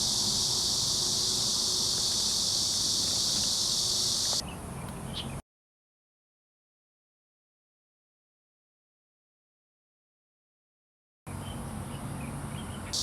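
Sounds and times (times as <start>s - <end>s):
faint outdoor background: 0.0s - 5.4s, 11.3s - 13.0s
insect chorus buzzing: 0.0s - 5.4s, 12.6s - 13.0s.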